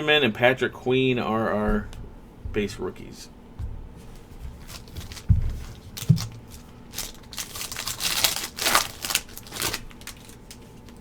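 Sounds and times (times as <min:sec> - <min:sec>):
dull knocks: 0:01.6 - 0:06.5
foil wrapper crinkling and tearing: 0:04.6 - 0:11.0.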